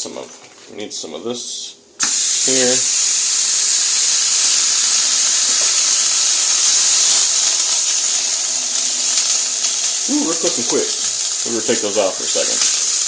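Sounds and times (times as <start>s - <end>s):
sandwiches sizzling in a pan: 2.0s - 13.0s.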